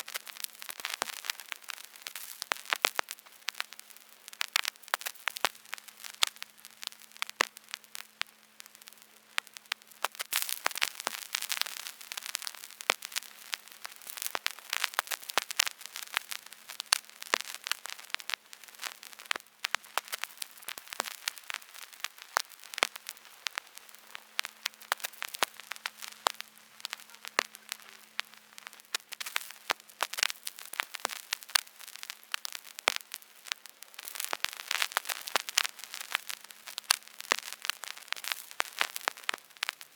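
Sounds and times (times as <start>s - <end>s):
vinyl record crackles and hiss: 0.0s - 39.9s.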